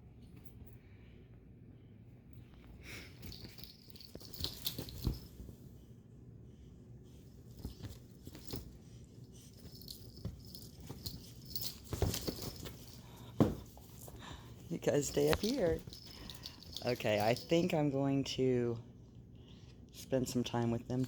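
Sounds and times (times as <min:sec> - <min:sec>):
rustling of monkeys scrambling: 0:07.2 - 0:17.6.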